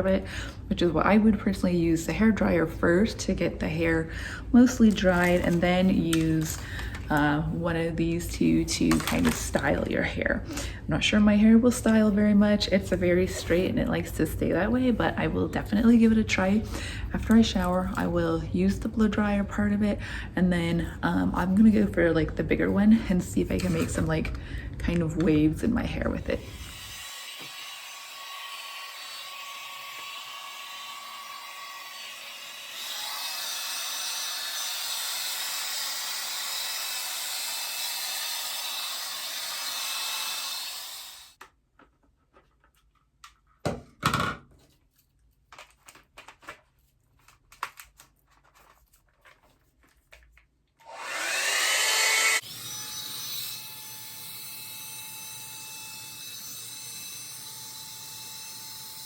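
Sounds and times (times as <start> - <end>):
clicks and handling sounds: 4.8 - 7.3, 41.4 - 43.7, 44.5 - 50.9
hair dryer blowing air: 26.4 - 41.4, 50.8 - 52.7.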